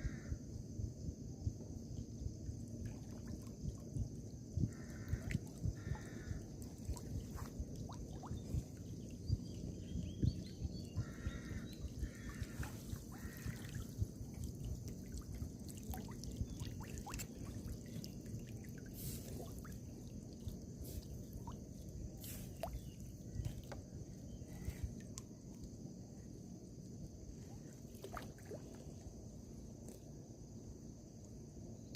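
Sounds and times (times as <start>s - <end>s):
low steady rumble: 0.1s - 27.8s
water dripping and splashing: 12.1s - 21.7s.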